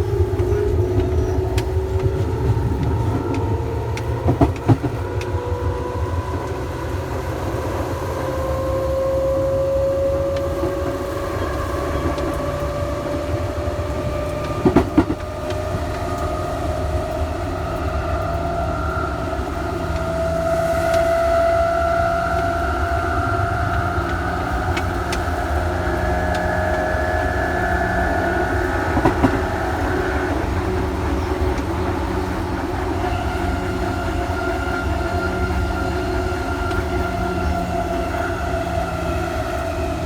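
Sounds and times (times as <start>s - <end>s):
electric train motor whine: 0.0s - 40.0s
low train running rumble: 0.0s - 40.0s
wheel clacks over rail joints: 0.0s - 40.0s.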